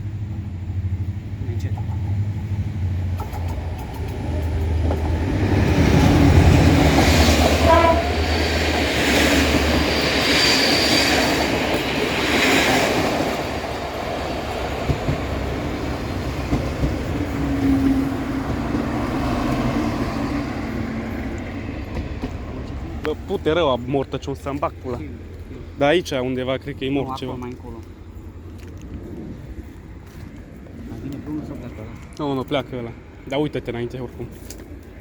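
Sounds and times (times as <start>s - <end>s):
train wheels rumbling on track: 0.0s - 35.0s
high wheel squeals: 7.0s - 11.8s.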